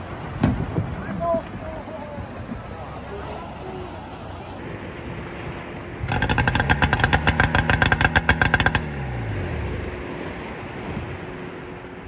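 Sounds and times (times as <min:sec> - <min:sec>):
small engine running and spinning down: 0:06.1 - 0:09.1.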